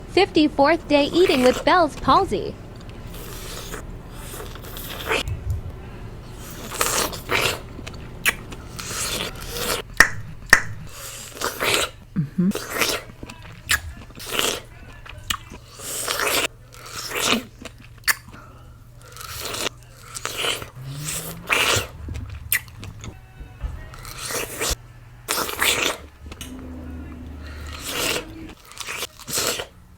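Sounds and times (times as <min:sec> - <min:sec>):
faint low hum: 0:00.0 - 0:29.9
wet bites and chewing: 0:06.5 - 0:23.2, 0:23.9 - 0:29.9.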